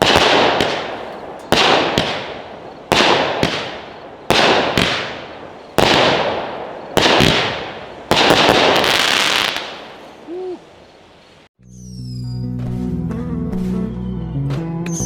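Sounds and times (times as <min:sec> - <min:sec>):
firework shots with echo: 0:00.0 - 0:10.2
firework crackling: 0:00.0 - 0:10.4.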